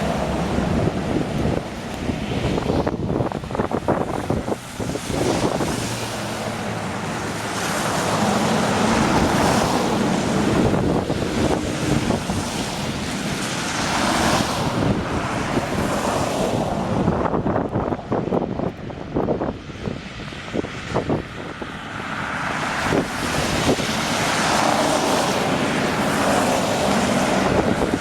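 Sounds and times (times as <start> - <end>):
wind buffeting microphone: 0.0 - 28.0.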